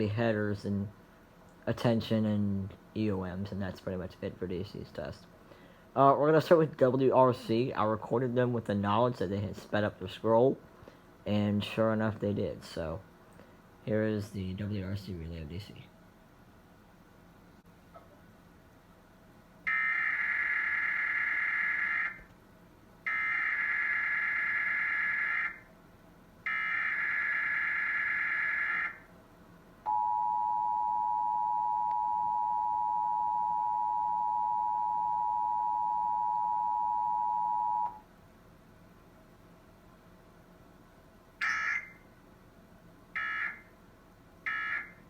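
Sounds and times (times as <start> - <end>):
steady two-tone attention signal: 29.9 - 38.0.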